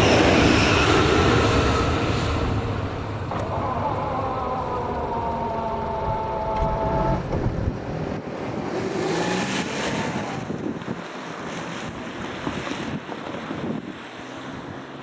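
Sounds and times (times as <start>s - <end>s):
railcar whine over low rumble: 0.0s - 8.8s
rushing wind-like noise: 0.0s - 15.0s.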